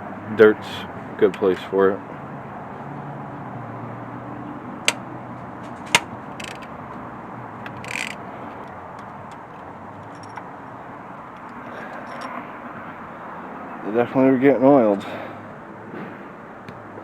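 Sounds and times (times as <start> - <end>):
hand tools clicking and tapping: 5.6 - 6.7, 7.6 - 10.4.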